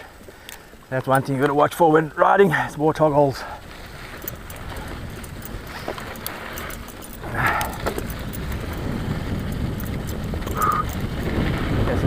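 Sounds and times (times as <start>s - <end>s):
bike rattles and clicks: 0.0s - 12.0s
bike tyres rumbling on dirt: 0.0s - 12.0s
wind on microphone: 3.5s - 12.0s.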